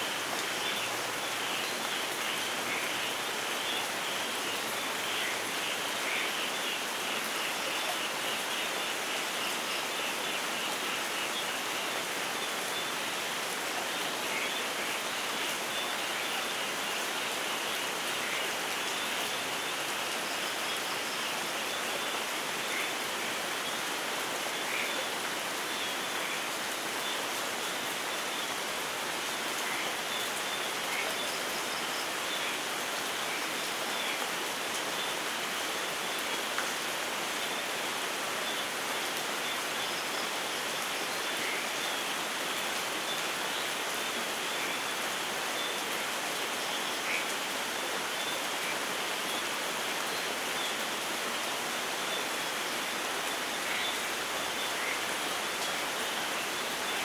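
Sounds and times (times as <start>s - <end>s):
steady rainfall: 0.0s - 57.0s.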